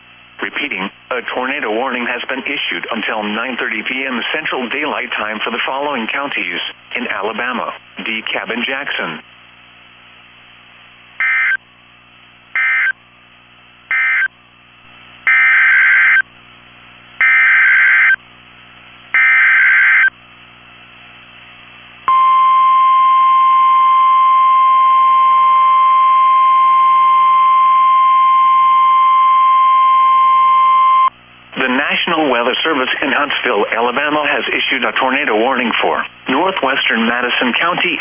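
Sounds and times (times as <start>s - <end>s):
data tone bursts: 11.2s - 11.6s, 12.6s - 13.0s, 13.9s - 14.3s, 15.3s - 16.2s, 17.2s - 18.2s, 19.2s - 20.1s
steady warning alarm tone: 11.2s - 11.6s, 12.6s - 13.0s, 13.9s - 14.3s, 15.3s - 16.2s, 17.2s - 18.2s, 19.1s - 20.1s, 22.1s - 31.1s.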